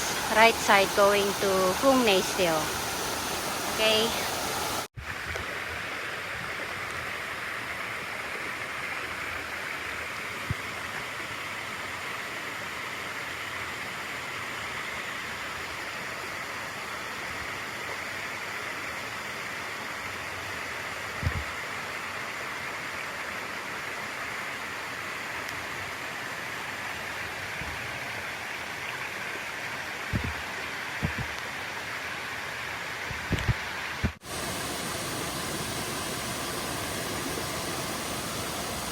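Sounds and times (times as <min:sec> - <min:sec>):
water rushing over waterfall: 0:00.0 - 0:06.3, 0:29.7 - 0:38.9
soft low thumps: 0:30.1 - 0:30.4, 0:31.0 - 0:31.3.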